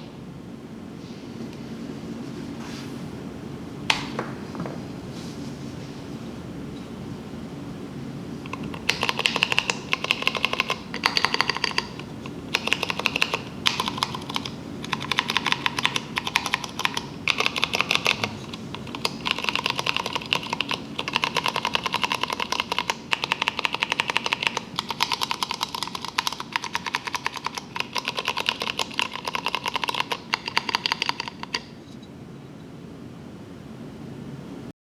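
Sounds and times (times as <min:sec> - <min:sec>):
mechanical keyboard typing: 0:08.4 - 0:31.7.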